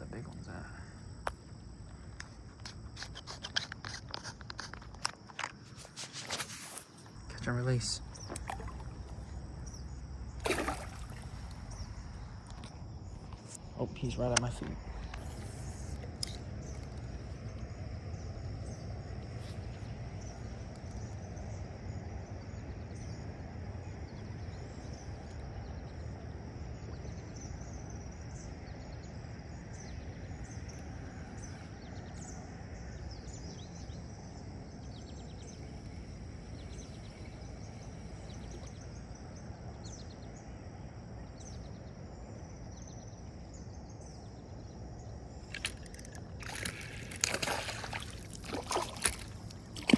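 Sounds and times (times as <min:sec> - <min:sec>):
high insect drone: 0:00.0 - 0:49.9.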